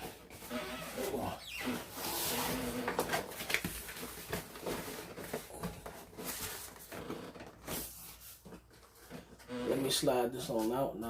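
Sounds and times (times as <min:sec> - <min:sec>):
cardboard scraping and rustling: 0:00.0 - 0:10.7.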